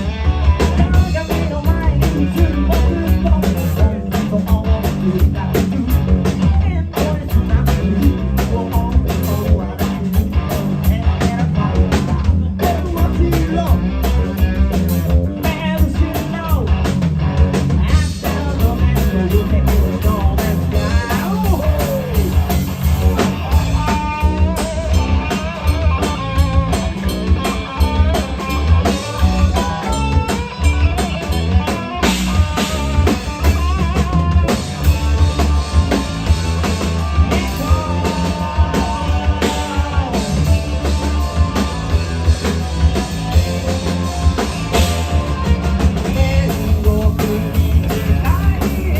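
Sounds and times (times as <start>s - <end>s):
person singing: 0.0s - 14.1s, 17.7s - 48.9s
drum kit beating: 0.0s - 48.9s
electric guitar: 0.0s - 48.9s
heavy bass: 0.0s - 48.9s.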